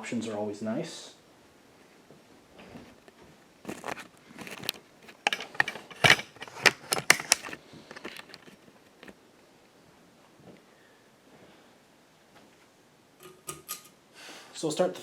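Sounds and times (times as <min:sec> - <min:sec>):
sharp clicks and rattles: 0:03.7 - 0:09.2.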